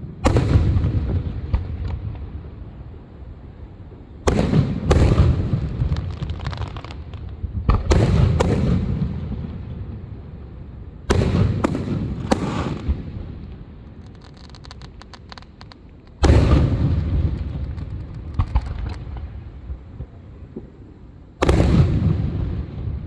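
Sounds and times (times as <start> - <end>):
fireworks booming: 0.0 - 23.0.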